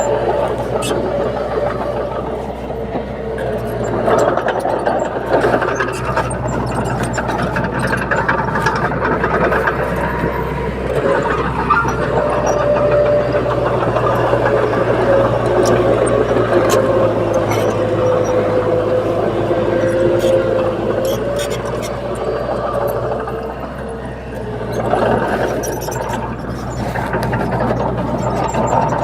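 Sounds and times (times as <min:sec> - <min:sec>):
bulldozer diesel engine running: 0:00.0 - 0:29.0.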